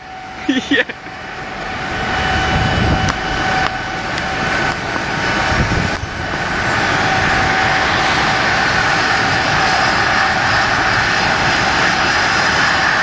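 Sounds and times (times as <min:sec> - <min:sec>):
helicopter turbine whine: 0:00.0 - 0:13.0
rotor downwash buffeting microphone: 0:00.0 - 0:13.0.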